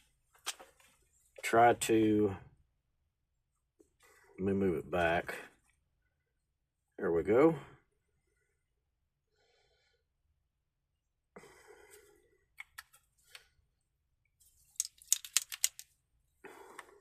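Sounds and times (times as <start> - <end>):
sharp handling clicks: 14.8 - 15.9.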